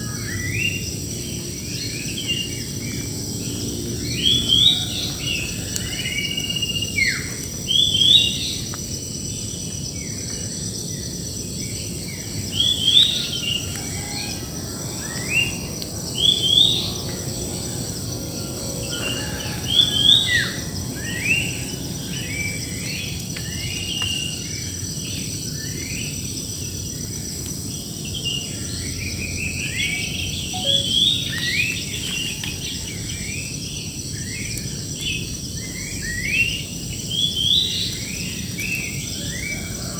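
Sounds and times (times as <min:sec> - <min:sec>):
birds chirping: 0:29.9 - 0:32.3
high-pitched insect drone: 0:30.1 - 0:32.3.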